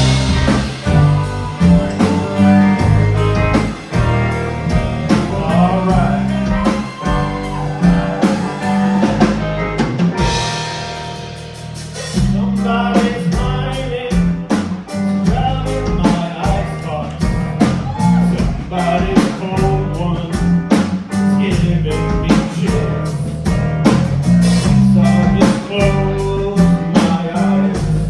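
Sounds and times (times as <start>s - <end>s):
rock music: 0.0s - 28.0s.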